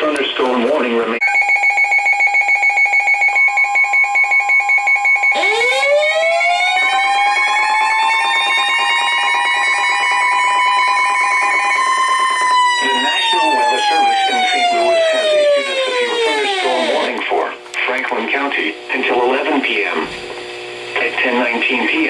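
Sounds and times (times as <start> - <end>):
pulsing electronic alarm: 1.2 - 17.2
siren-like rising tone: 1.2 - 17.2.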